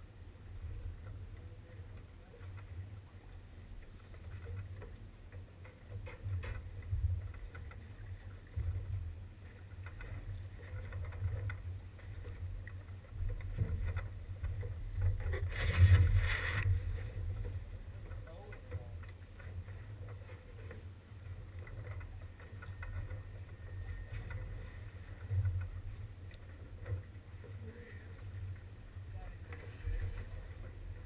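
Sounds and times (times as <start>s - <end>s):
boat engine rumble: 0.0s - 31.0s.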